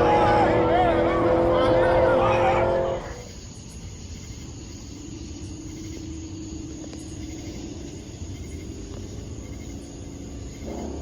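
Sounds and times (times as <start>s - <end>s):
steady hum: 0.0s - 3.4s
vehicle rumble: 0.0s - 3.5s, 5.3s - 11.0s
high insect trill: 0.0s - 11.0s.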